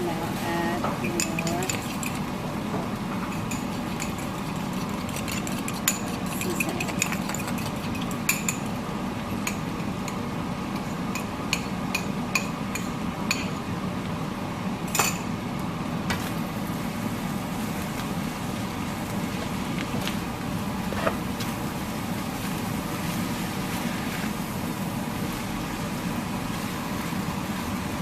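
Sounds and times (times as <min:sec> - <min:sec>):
utensil clinking against a pan: 0:03.2 - 0:08.7.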